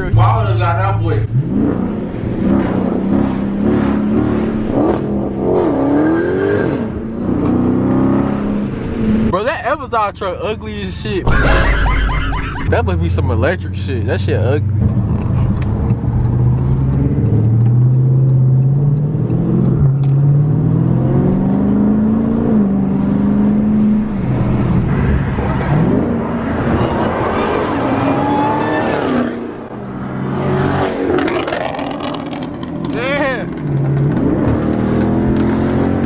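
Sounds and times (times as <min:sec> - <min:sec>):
car engine accelerating: 0:00.0 - 0:09.3, 0:11.3 - 0:36.0.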